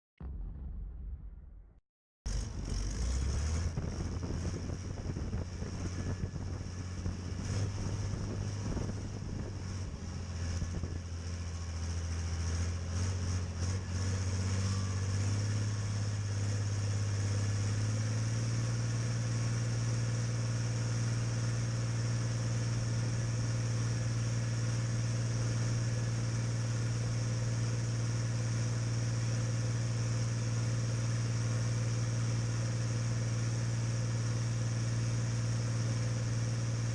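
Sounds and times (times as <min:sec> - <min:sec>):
engine clattering: 0:02.3 - 0:29.8
tractor diesel engine running: 0:02.3 - 0:36.9.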